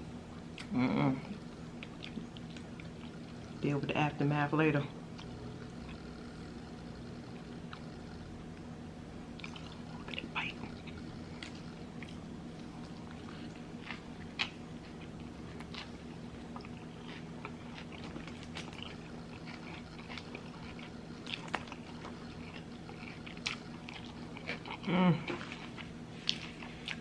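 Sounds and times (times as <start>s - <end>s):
low steady hum: 0.0s - 27.0s
person chewing and biting food: 1.6s - 3.4s, 9.3s - 27.0s.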